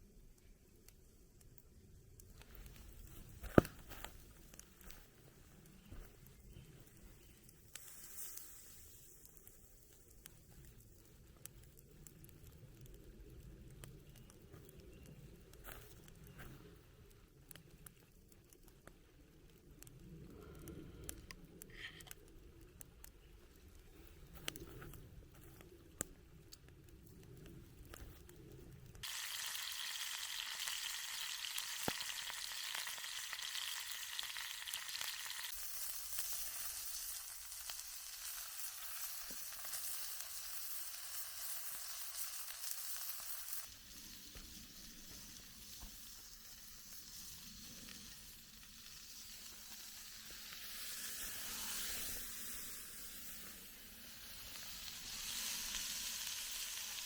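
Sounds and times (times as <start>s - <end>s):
food sizzling in a pan: 29.0s - 57.0s.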